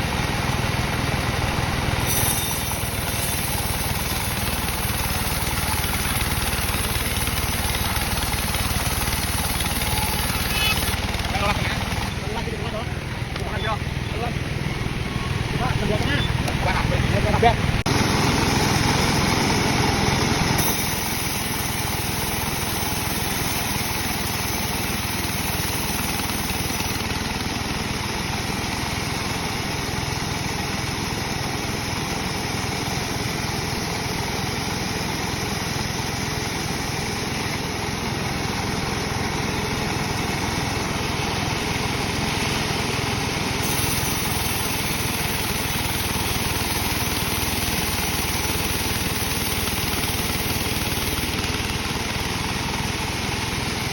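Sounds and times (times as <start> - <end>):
saw motor drone: 0.8 - 27.4, 43.6 - 53.9.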